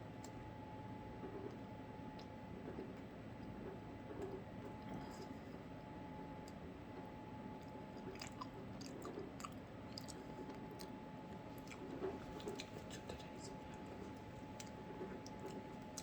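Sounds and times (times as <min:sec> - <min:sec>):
person chewing granola bar: 0:07.5 - 0:16.0.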